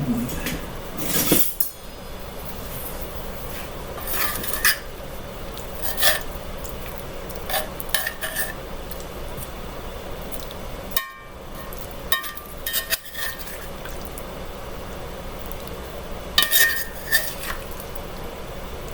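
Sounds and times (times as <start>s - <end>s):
metal spoon clinking against dishes: 11.0s - 11.4s, 12.1s - 13.6s, 16.4s - 17.6s.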